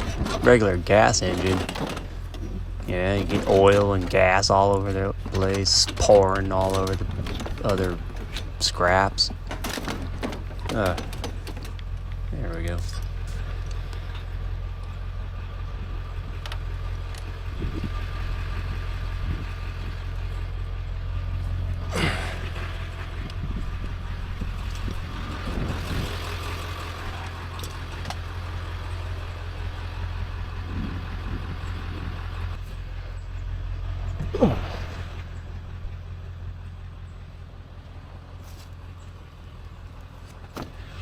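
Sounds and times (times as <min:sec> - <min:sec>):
knocks and clatters: 0:00.0 - 0:15.0
vehicle engine droning: 0:00.0 - 0:41.0.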